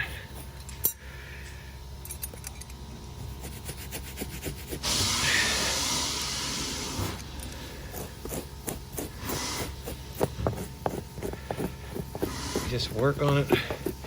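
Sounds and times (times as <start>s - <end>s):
scratching and scraping carpet: 3.2s - 14.0s
handheld steamer hissing: 4.7s - 7.4s, 9.0s - 14.0s.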